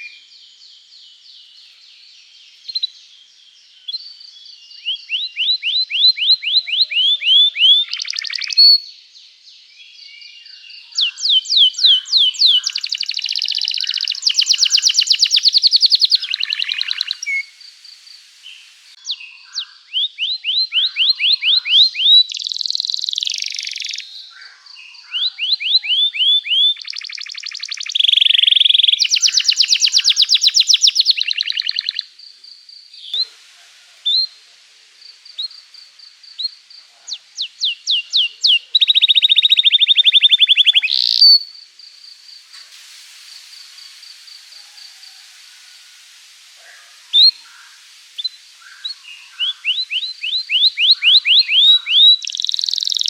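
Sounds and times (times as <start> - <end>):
canary singing: 4.8 - 8.9, 10.5 - 17.5, 18.6 - 32.1, 36.3 - 41.6, 46.7 - 53.0.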